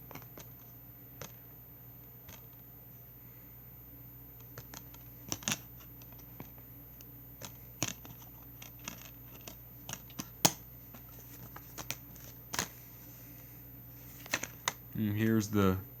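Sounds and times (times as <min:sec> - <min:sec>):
plastic case clicks and snaps: 0:07.4 - 0:10.6.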